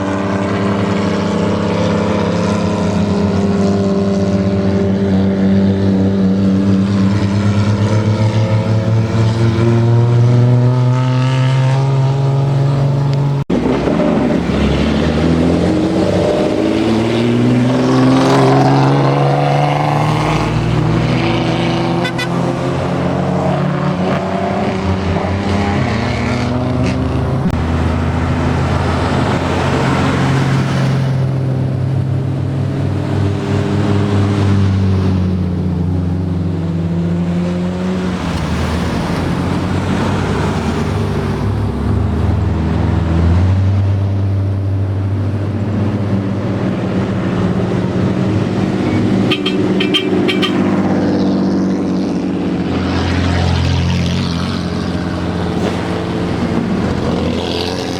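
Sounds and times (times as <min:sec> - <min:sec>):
loud car exhausts revving: 0:00.0 - 0:57.9.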